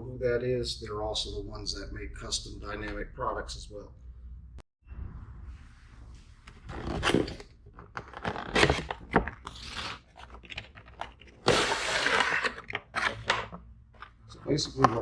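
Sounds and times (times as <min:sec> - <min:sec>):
cardboard rustling and tearing: 0:11.4 - 0:13.3.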